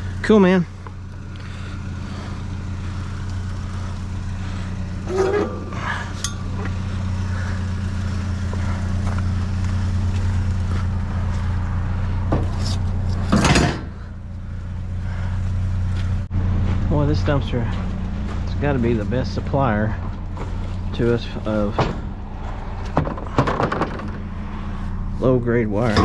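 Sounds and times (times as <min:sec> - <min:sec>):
vehicle engine idling: 0:00.0 - 0:26.0
scrap metal clinking: 0:05.0 - 0:06.8.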